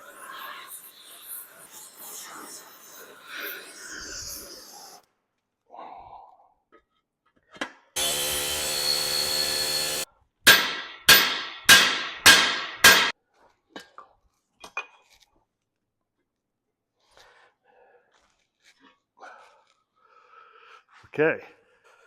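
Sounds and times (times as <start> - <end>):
pneumatic rivet gun buzzing: 8.0 - 10.0.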